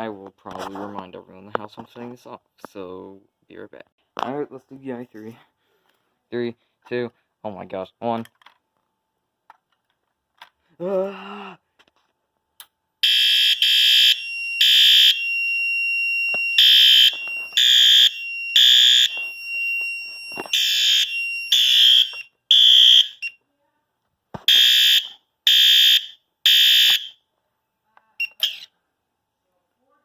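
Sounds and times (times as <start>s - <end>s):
fire alarm horn blasts: 13.0s - 23.4s, 24.5s - 27.2s.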